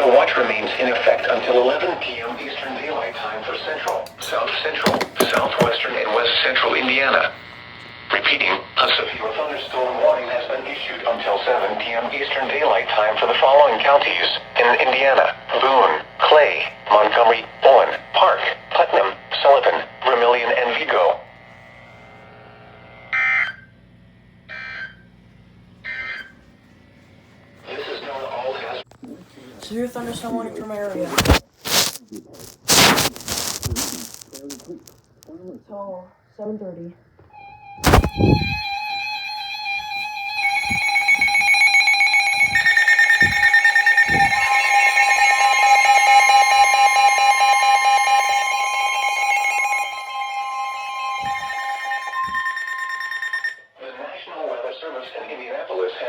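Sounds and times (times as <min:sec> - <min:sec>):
faint radio hiss: 0:00.0 - 0:22.4, 0:27.2 - 0:37.0, 0:53.8 - 0:56.0
buzzing two-tone data bursts: 0:31.3 - 0:35.0, 0:37.3 - 0:53.6
low thumps: 0:37.8 - 0:38.7.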